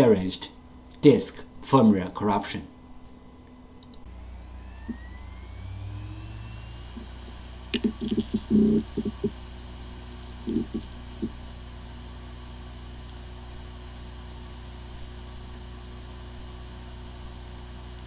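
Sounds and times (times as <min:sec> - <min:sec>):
steady hum: 0:00.0 - 0:18.0
hard drive whine: 0:02.2 - 0:18.0
hard drive clicks and knocks: 0:07.0 - 0:09.4.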